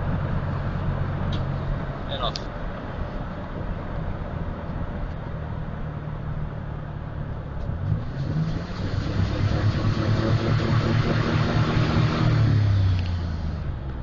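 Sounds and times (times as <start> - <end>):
misfiring engine running on the move: 3.9 - 14.0.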